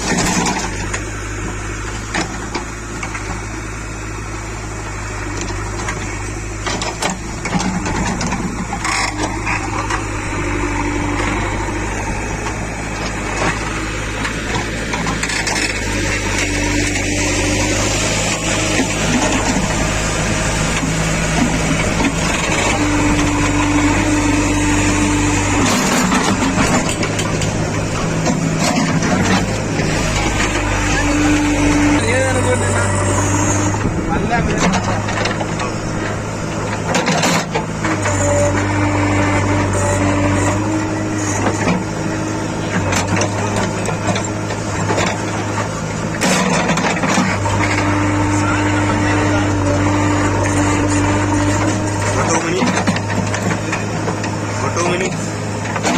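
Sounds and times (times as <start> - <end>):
diesel engine running: 0.0 - 55.9
rough clattering with knocks: 5.3 - 10.6, 12.2 - 17.2, 18.2 - 32.0, 33.2 - 38.7, 42.6 - 48.3, 49.9 - 55.9.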